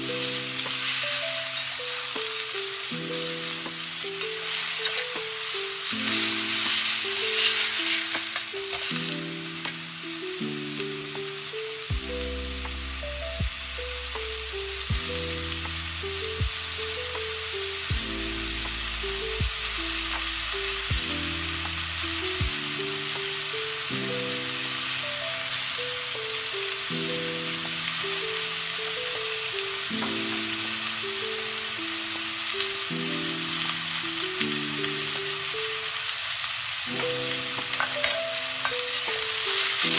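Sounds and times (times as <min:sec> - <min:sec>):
background music with simple melody: 0:00.0 - 0:39.9
stir-fry sizzling in a wok: 0:00.0 - 0:39.9
bass line: 0:11.9 - 0:22.5.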